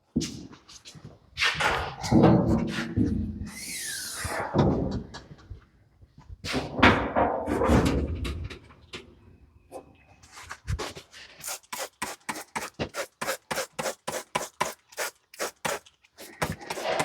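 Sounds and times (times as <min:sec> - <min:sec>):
spray hissing: 0:11.4 - 0:17.0.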